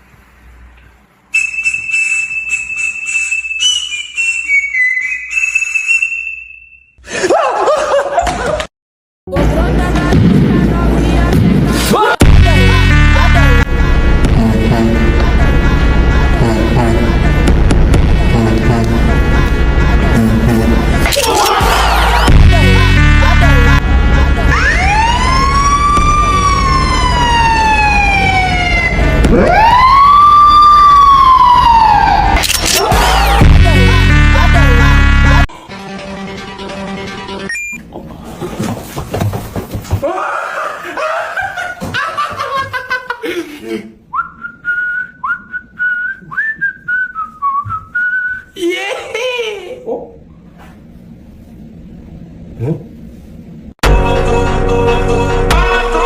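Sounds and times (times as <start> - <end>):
high whistle tone: 1.3 - 7.0
steady low rumble: 9.4 - 29.7
loud warbling sound: 20.2 - 30.3
siren-like wail: 21.6 - 35.4.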